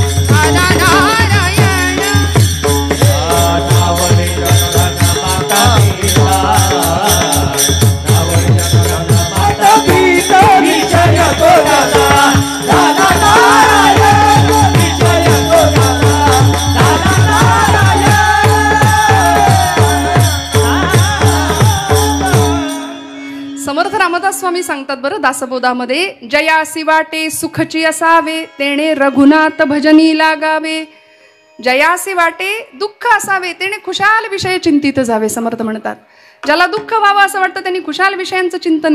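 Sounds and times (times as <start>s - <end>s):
hand cymbals and drum beat: 0.0s - 23.6s.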